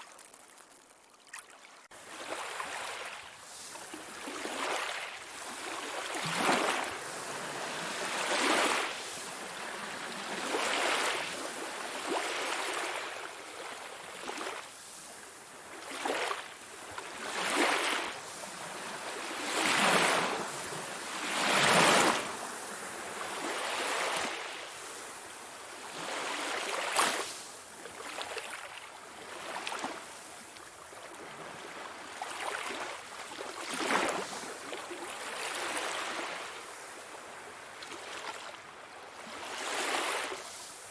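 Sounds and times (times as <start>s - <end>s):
sea waves washing in: 1.9s - 30.5s.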